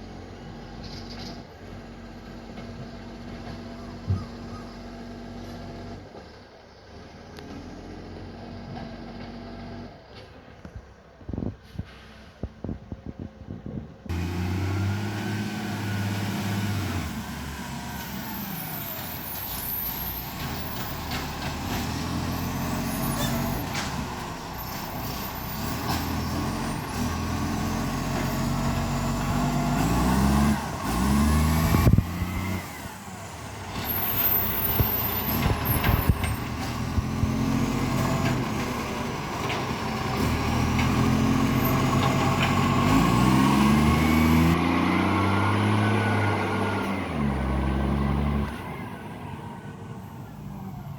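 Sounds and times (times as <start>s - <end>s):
garbage truck diesel engine: 0.0s - 50.9s
air brake hisses: 11.6s - 12.5s.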